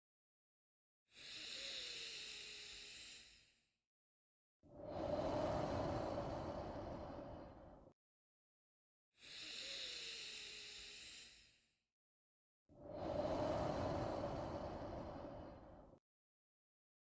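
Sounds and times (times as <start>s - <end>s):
deep human breathing: 1.1s - 3.3s, 4.7s - 8.0s, 9.2s - 11.6s, 12.8s - 16.0s.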